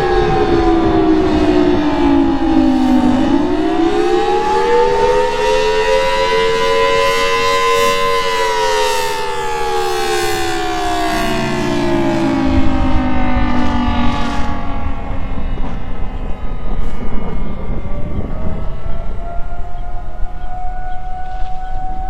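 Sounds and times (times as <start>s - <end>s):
warning siren wailing: 0.0s - 22.0s
low rumble: 11.0s - 20.5s.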